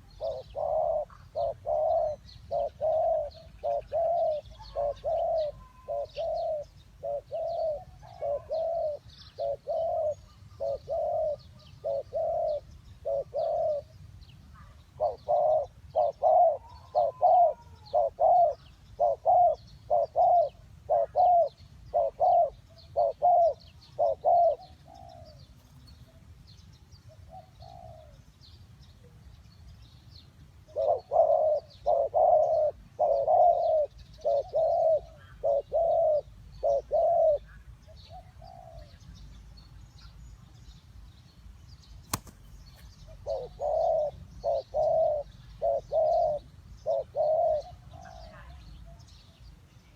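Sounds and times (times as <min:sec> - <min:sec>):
doves cooing: 0:00.0 - 0:13.9, 0:14.6 - 0:25.4, 0:27.3 - 0:28.2, 0:30.7 - 0:39.0, 0:43.0 - 0:49.0
small birds chirping: 0:00.0 - 0:49.9.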